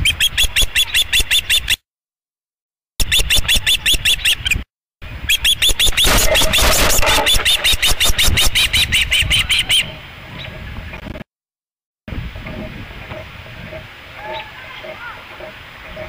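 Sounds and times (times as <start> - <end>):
osprey piping chirps: 5.3 - 10.0.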